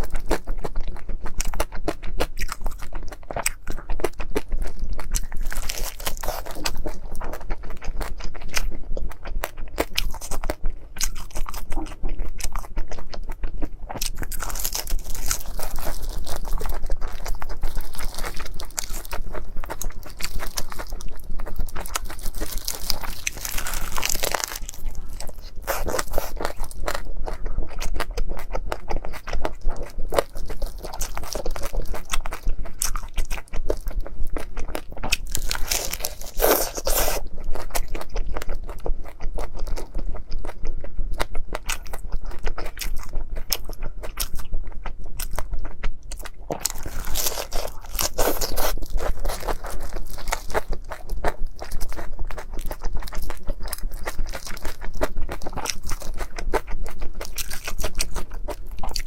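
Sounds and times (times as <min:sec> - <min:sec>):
crunchy food being chewed: 0:00.0 - 0:59.0.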